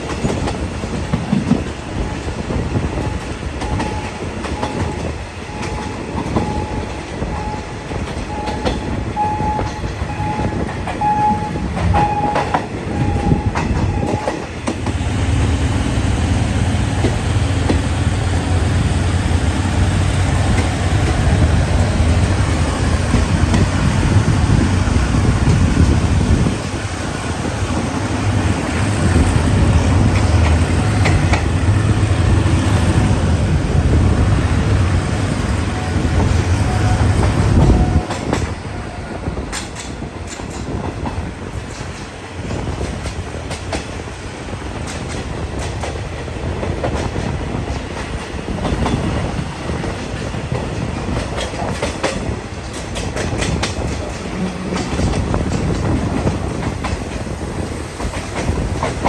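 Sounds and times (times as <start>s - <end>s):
rail clicks: 0.0s - 59.0s
train wheels clacking on rails: 0.0s - 59.0s
heavy low rumble: 15.9s - 39.5s.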